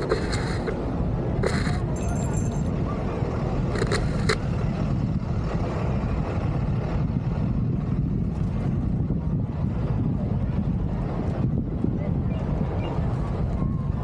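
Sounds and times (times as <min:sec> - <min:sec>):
short clicks: 0:00.0 - 0:02.7, 0:03.7 - 0:04.7
wind buffeting microphone: 0:03.7 - 0:14.0.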